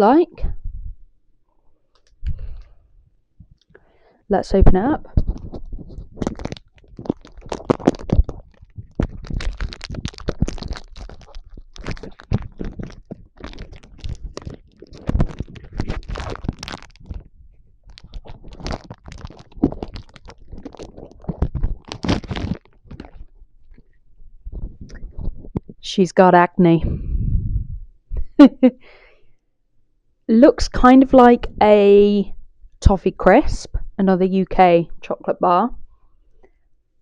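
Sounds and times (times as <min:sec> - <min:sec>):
wrapper crinkling: 0:05.0 - 0:25.8.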